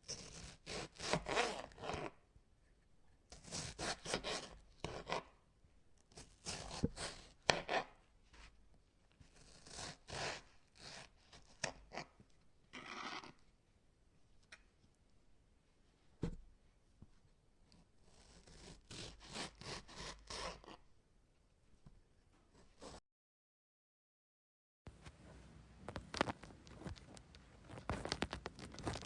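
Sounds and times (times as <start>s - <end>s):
raw vegetables crunching: 26.0s - 29.0s.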